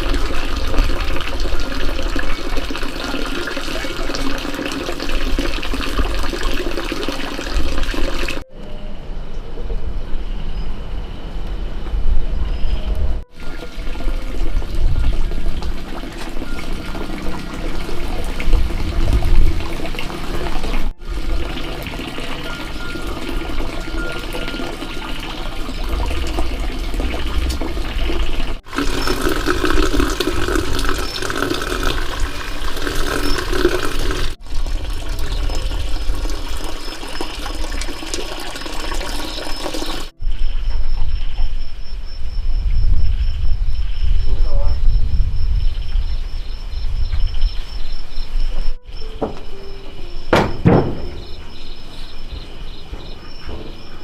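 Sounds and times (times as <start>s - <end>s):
running splashing water: 0.0s - 8.4s, 13.3s - 40.2s.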